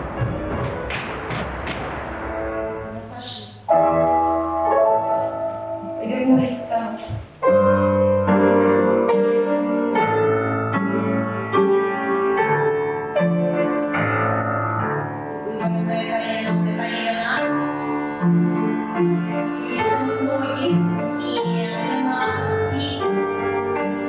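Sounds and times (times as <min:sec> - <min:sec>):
piano music with steady beat: 0:00.0 - 0:24.0.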